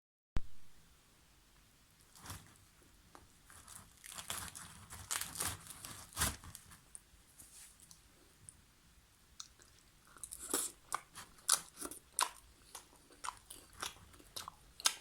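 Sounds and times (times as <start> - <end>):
bread tearing by hand: 3.5 - 6.9.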